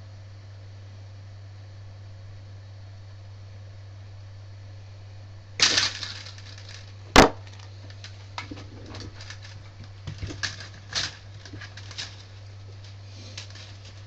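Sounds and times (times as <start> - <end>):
steady low hum: 0.0 - 14.0
filament rustling: 5.6 - 14.0
filament snapping: 5.6 - 14.0.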